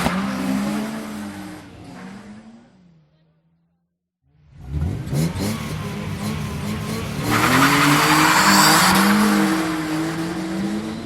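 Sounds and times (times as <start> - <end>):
racing car engine revving: 4.4 - 11.0.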